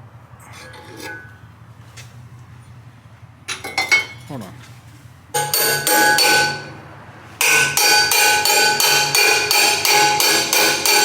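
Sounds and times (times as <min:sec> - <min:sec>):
hammer striking steel wrench: 0:05.4 - 0:06.8, 0:07.4 - 0:11.0.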